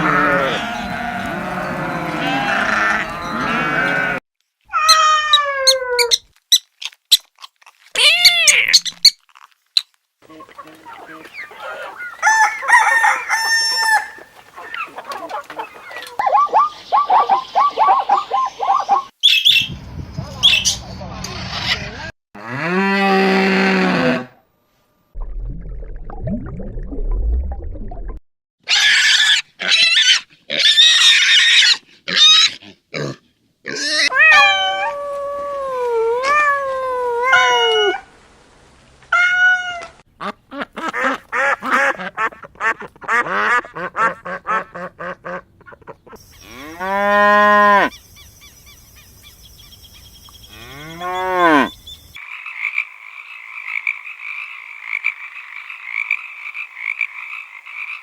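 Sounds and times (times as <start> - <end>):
gliding animal cries: 0.0 - 4.2
arched animal cries: 0.0 - 6.2, 8.0 - 8.9, 33.7 - 35.0
shrill animal calls: 28.6 - 32.6.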